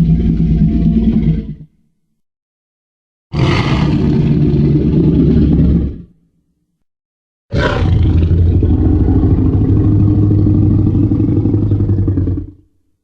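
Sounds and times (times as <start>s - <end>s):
deep monster roar: 3.3s - 6.1s, 7.5s - 12.6s.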